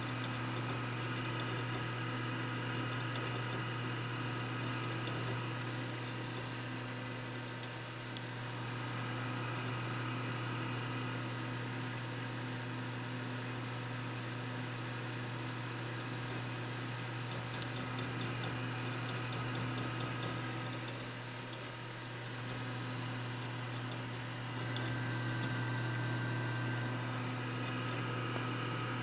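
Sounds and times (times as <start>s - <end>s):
hard drive humming: 0.0s - 11.0s, 15.6s - 29.0s
hard drive light clicks: 0.2s - 1.9s, 2.9s - 6.4s, 17.3s - 21.7s, 22.4s - 27.0s.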